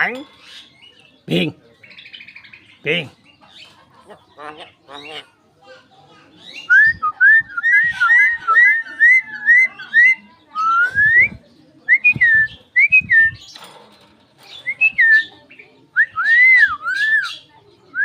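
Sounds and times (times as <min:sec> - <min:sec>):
myna whistling: 0:16.0 - 0:17.4.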